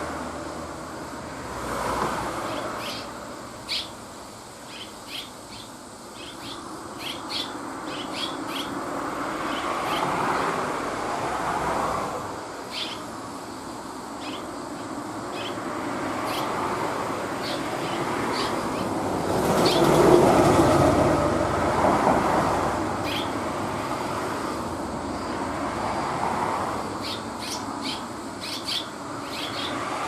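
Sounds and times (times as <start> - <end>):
passing vehicles rushing: 0.0 - 4.6, 6.6 - 30.0
swallows chirping: 2.5 - 4.0, 4.6 - 8.8, 12.7 - 13.1, 14.2 - 16.6, 17.3 - 19.0, 23.0 - 23.4, 27.0 - 29.8.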